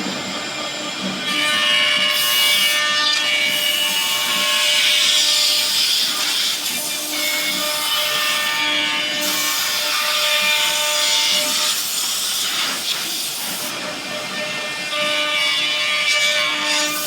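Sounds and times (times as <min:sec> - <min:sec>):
machine motor whine: 0:00.0 - 0:17.0.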